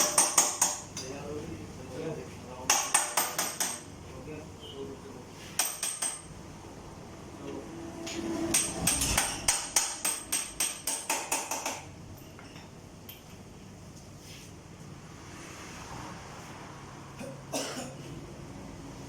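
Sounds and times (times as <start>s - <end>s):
hammer strikes: 0.0s - 0.9s, 2.7s - 3.9s, 5.6s - 6.3s, 8.5s - 11.9s.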